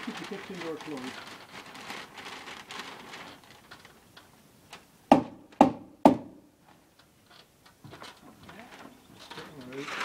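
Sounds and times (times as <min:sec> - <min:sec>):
faint rustling: 0:00.0 - 0:04.9, 0:06.6 - 0:10.0
sharp knocks: 0:05.1 - 0:06.4.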